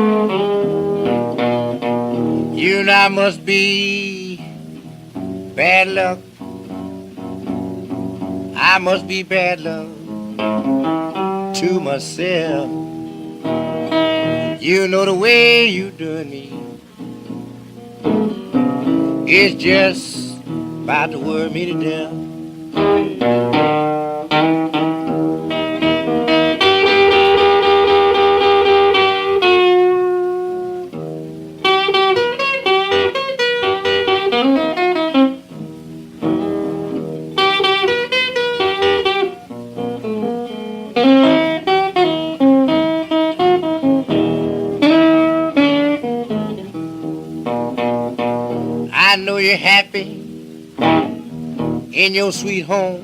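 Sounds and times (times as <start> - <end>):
blues guitar on old record: 0.0 - 53.0.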